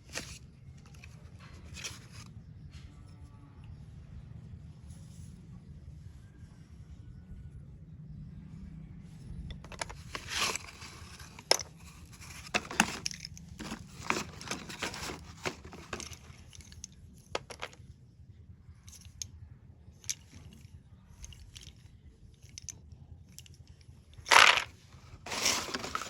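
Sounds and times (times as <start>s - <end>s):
pencils scraping and crackling: 0.0s - 2.2s, 9.6s - 17.8s, 24.2s - 26.0s.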